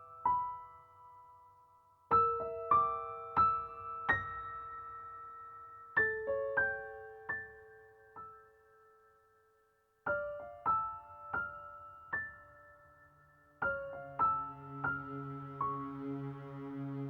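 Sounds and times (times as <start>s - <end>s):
slow piano notes: 10.1s - 17.0s.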